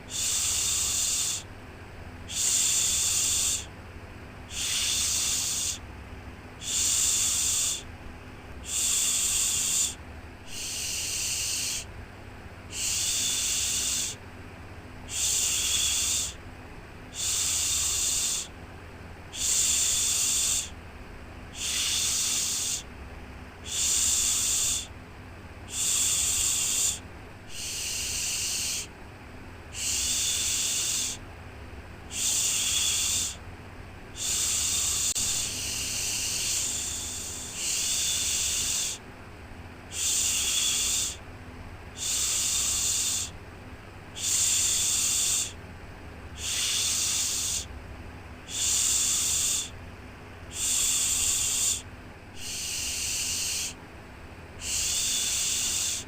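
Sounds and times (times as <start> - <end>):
person shushing: 4.5 - 5.8, 8.6 - 11.9, 12.7 - 14.2, 15.1 - 16.4, 17.2 - 18.5, 19.4 - 20.7, 21.6 - 22.9, 25.7 - 28.9, 29.8 - 31.2, 32.1 - 33.4, 34.2 - 39.0, 39.9 - 41.2, 42.0 - 43.3, 44.2 - 45.6, 46.4 - 47.7, 48.5 - 49.7, 50.5 - 53.8, 54.6 - 56.0.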